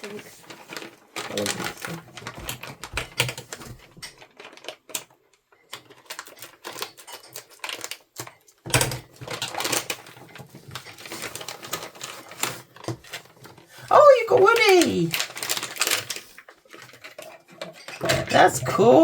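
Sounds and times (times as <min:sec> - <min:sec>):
plastic packaging crinkling: 0:00.0 - 0:05.0, 0:05.8 - 0:08.3, 0:09.0 - 0:18.0.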